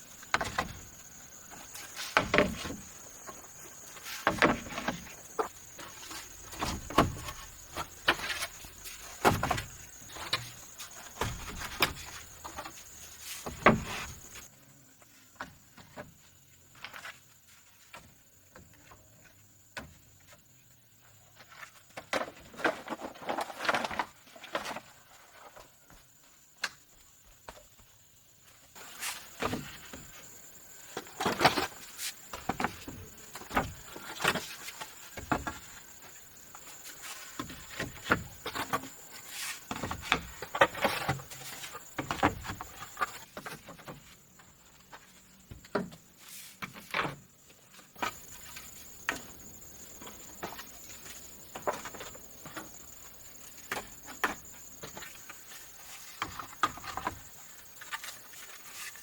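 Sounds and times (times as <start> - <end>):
knocks and rustling: 0.2 - 14.5, 28.8 - 47.3.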